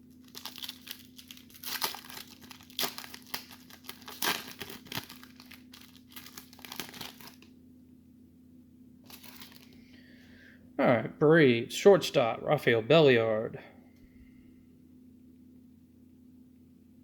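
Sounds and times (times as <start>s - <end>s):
wrapper being torn and crinkled: 0.0s - 7.5s, 9.1s - 9.8s.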